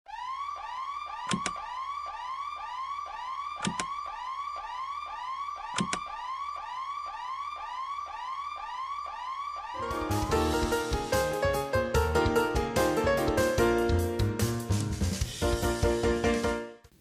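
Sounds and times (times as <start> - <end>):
sharp clicks: 3.6 - 4.0, 5.7 - 6.1.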